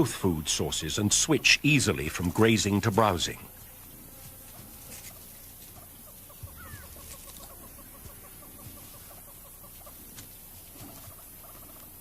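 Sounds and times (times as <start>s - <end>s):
bird calling short notes: 6.4s - 7.8s.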